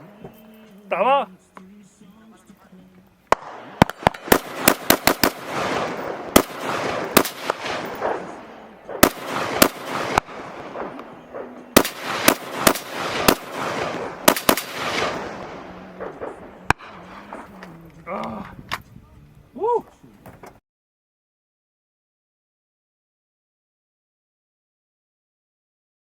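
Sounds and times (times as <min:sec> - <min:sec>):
rapid rifle shots with echo: 0:03.3 - 0:17.6.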